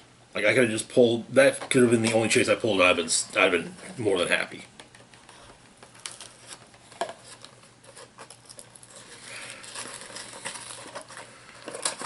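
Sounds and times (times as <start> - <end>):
hands rustling plastic packaging: 4.8 - 12.0.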